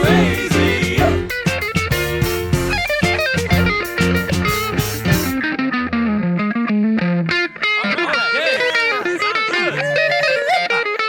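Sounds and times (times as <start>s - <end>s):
drums and cymbals: 0.0s - 5.4s
bass guitar: 0.0s - 7.6s
electric guitar: 0.0s - 11.0s.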